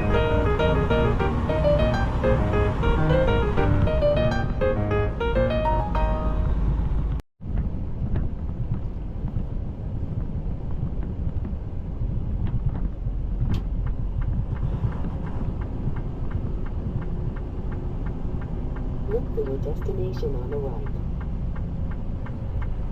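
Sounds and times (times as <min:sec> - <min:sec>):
road noise: 0:00.0 - 0:22.9
truck engine rumble: 0:00.0 - 0:22.9
light ticking: 0:10.2 - 0:22.9.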